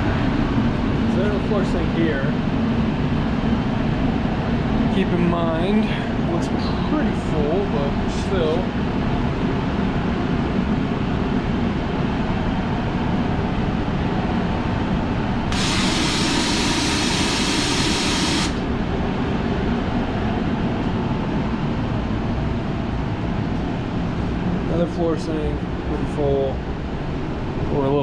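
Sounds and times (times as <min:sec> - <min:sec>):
boiler room equipment drone: 0:00.0 - 0:28.0
hiss of escaping steam: 0:15.5 - 0:18.6.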